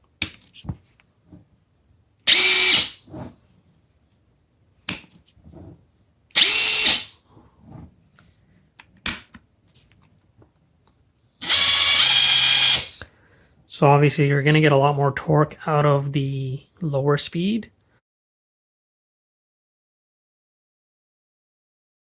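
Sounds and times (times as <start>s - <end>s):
impact driver motor whine: 2.3s - 3.0s, 6.4s - 7.1s, 11.4s - 12.9s.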